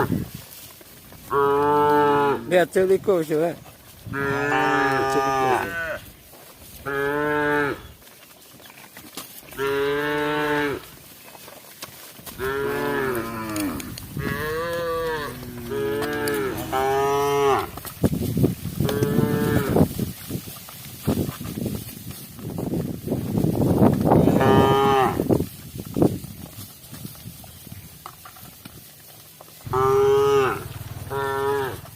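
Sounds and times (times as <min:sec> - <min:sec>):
cows mooing: 0:01.3 - 0:02.6, 0:04.1 - 0:06.0, 0:06.8 - 0:08.0, 0:09.5 - 0:11.0, 0:12.3 - 0:17.9, 0:18.8 - 0:19.9, 0:24.1 - 0:25.4, 0:29.7 - 0:31.9.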